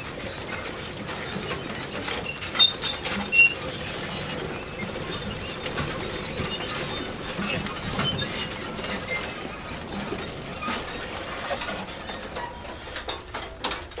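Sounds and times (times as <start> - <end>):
manure spreader clattering: 0.0 - 14.0.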